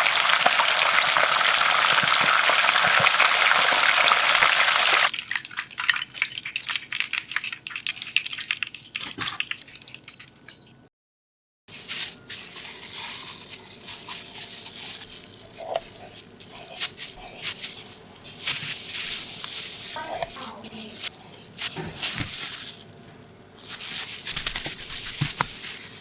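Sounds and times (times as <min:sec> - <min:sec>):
fish sizzling in hot oil: 0:00.0 - 0:06.0
oil crackling and popping: 0:00.0 - 0:10.0, 0:11.7 - 0:26.0.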